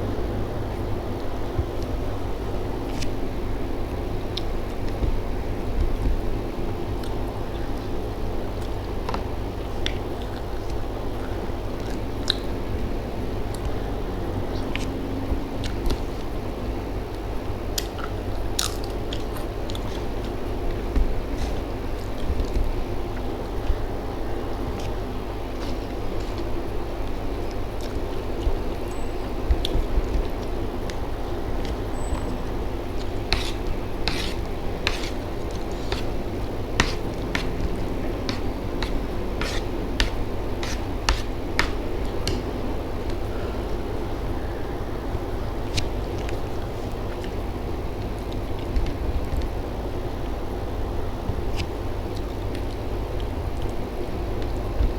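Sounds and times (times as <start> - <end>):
low background hum: 0.0 - 54.9
crunchy chewing: 17.8 - 43.6.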